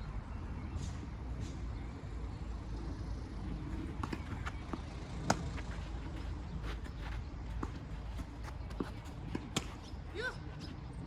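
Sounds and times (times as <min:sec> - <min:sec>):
steady low hum: 0:01.7 - 0:11.0
tennis balls hitting and bouncing: 0:03.6 - 0:11.0.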